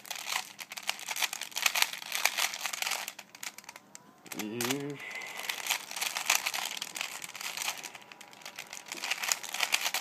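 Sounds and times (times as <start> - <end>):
puzzle cube clicking and rattling: 0.0 - 10.0
rustling: 0.0 - 10.0.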